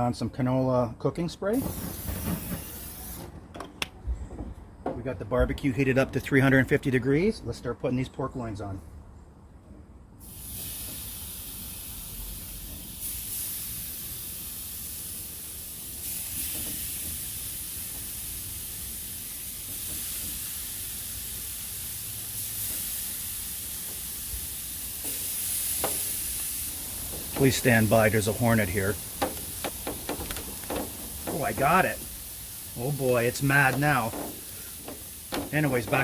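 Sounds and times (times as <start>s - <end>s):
meat sizzling on a grill: 1.7s - 3.2s, 10.2s - 36.0s.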